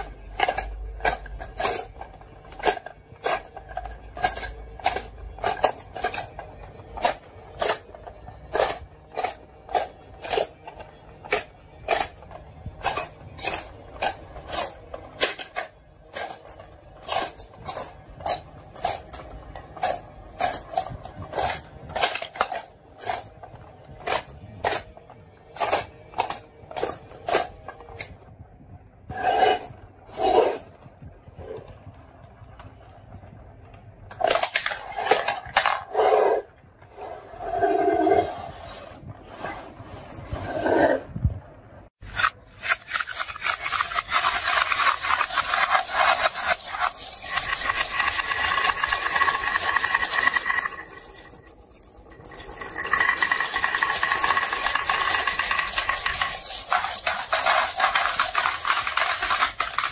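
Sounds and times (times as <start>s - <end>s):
marbles clacking down wooden run: 42.6s - 59.9s.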